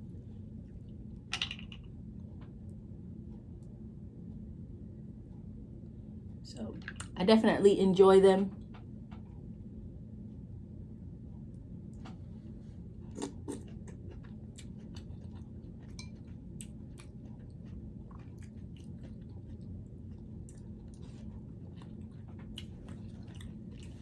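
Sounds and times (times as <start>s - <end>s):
steady low hum: 0.0s - 24.0s
person chewing: 13.0s - 24.0s.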